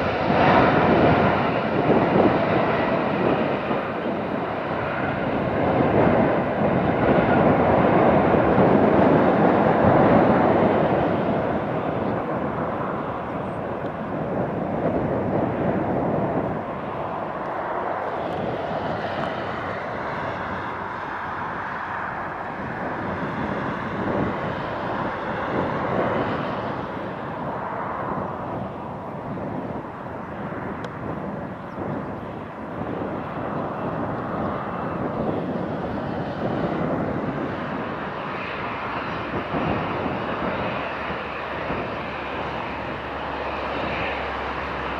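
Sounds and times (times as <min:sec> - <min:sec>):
faint high jet whine: 0:00.0 - 0:44.9
jet engine rush: 0:00.0 - 0:44.9.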